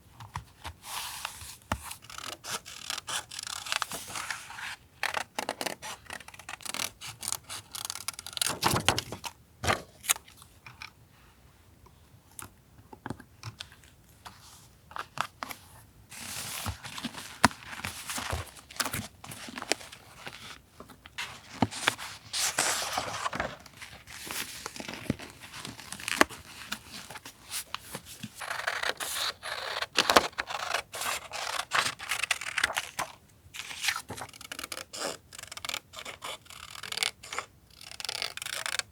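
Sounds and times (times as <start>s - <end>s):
paper tearing and rustling: 6.7s - 9.2s, 28.4s - 34.7s.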